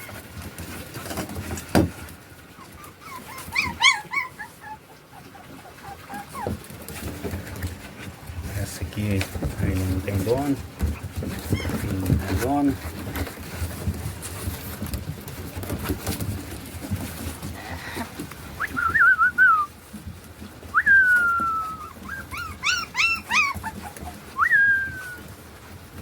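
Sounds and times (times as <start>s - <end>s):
puppy whining and whimpering: 2.4s - 7.4s, 9.6s - 13.2s, 20.7s - 25.4s
puppy yelps: 2.5s - 6.7s, 11.4s - 11.9s, 20.8s - 25.2s.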